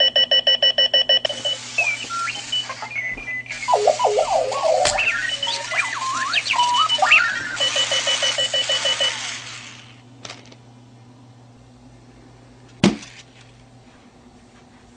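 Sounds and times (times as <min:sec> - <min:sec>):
alarm clock chirps and beeps: 0:00.0 - 0:09.3.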